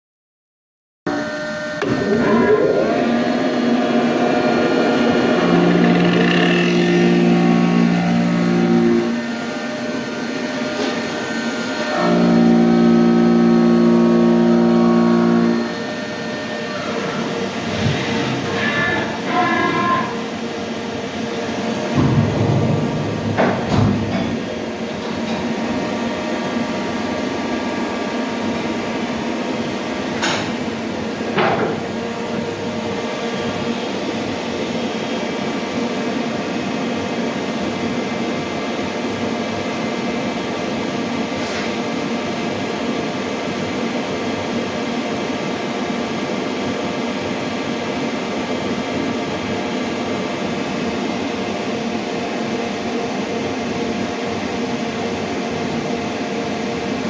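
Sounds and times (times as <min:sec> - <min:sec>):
lathe mechanical hum: 0:01.1 - 0:57.0
sharp knocks: 0:21.7 - 0:25.7.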